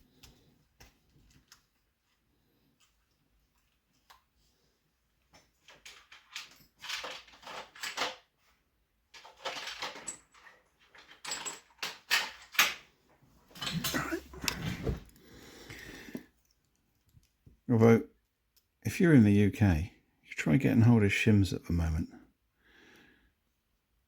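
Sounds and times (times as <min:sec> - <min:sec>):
metal lock parts clicking: 0:09.2 - 0:12.8.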